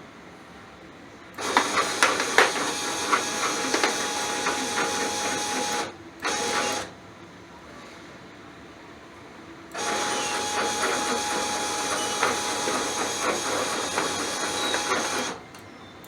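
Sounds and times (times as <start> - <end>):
scattered clicks: 1.4 - 6.9
stepper motor whirring: 1.4 - 6.9, 9.8 - 15.4.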